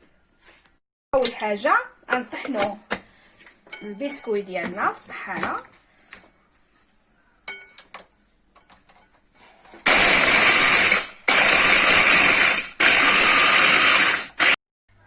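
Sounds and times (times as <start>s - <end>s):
electric grinder grinding: 9.9s - 14.6s.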